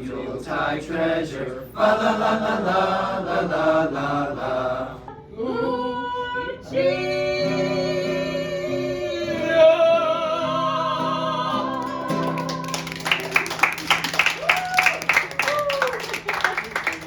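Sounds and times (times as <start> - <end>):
people clapping: 11.8 - 17.0.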